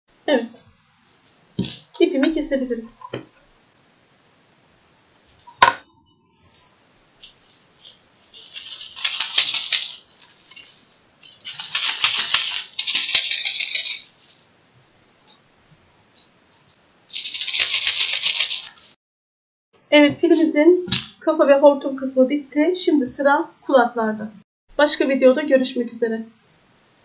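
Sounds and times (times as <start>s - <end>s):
baby rattle shaking: 7.2s - 14.4s, 17.1s - 19.0s.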